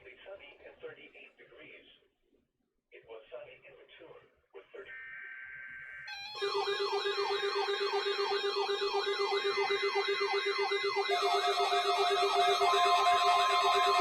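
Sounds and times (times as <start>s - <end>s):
wailing electronic siren: 5.6s - 14.0s
steady alarm tone: 6.1s - 14.0s.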